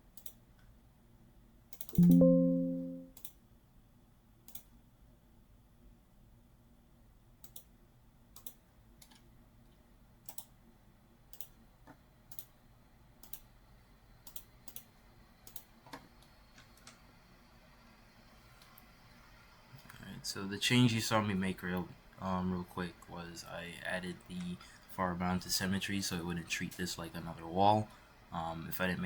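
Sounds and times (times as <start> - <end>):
computer mouse clicks: 0.2 - 0.7, 1.7 - 2.4, 4.5 - 4.7, 7.4 - 7.7, 8.4 - 10.6, 11.3 - 12.6, 13.2 - 13.5, 14.2 - 17.0.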